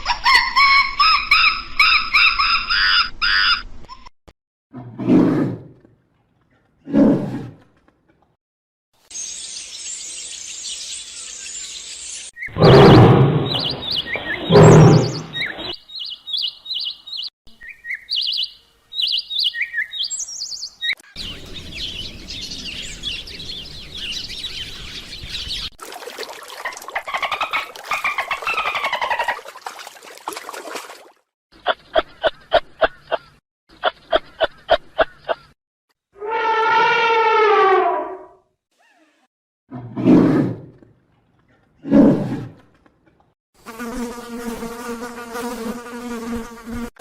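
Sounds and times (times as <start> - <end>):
bird chirping: 9.1 - 25.7
animal calls: 12.4 - 15.8.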